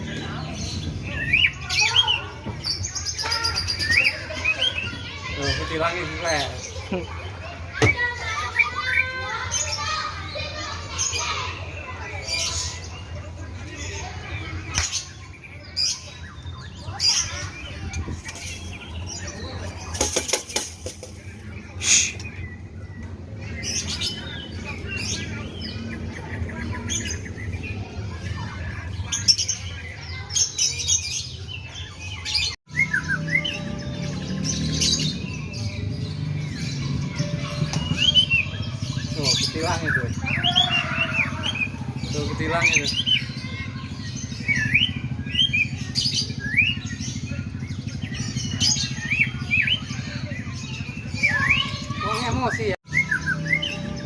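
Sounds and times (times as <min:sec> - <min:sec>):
bird singing chirps and whistles: 0:31.9 - 0:40.9, 0:42.6 - 0:54.0.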